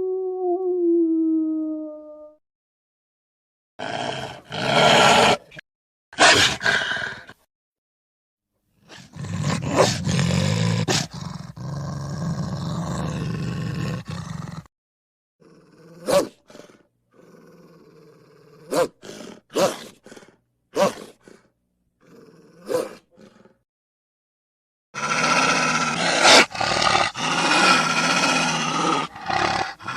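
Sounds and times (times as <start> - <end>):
wolf growling: 25.0 - 29.9.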